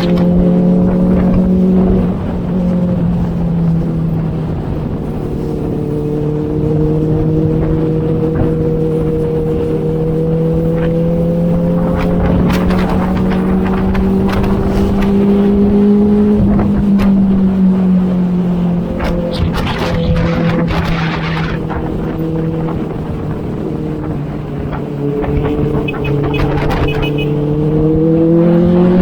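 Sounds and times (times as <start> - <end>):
motorcycle engine running: 0.0 - 29.0
wind noise: 0.0 - 29.0
brief crackles: 19.0 - 21.8.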